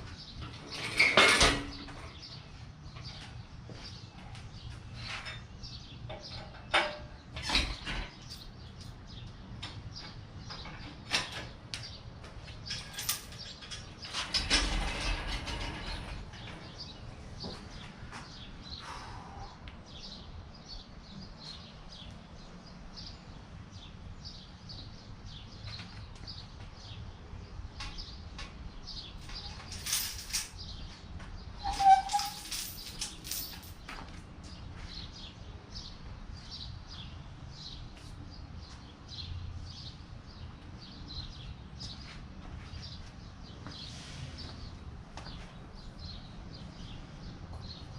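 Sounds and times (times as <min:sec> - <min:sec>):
small birds chirping: 0:01.7 - 0:14.2, 0:15.8 - 0:47.9
metallic clinks and knocks: 0:12.6 - 0:16.4, 0:29.2 - 0:30.7, 0:31.6 - 0:34.1.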